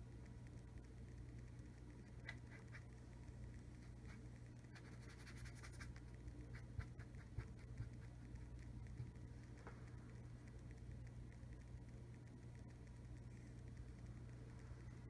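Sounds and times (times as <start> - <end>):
low steady hum: 0.0 - 15.0
paintbrush scratching on board: 4.8 - 8.7.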